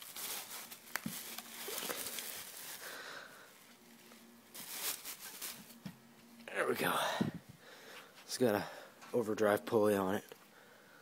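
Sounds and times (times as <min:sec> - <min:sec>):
packaging rustling: 0:00.0 - 0:03.3, 0:04.2 - 0:05.9.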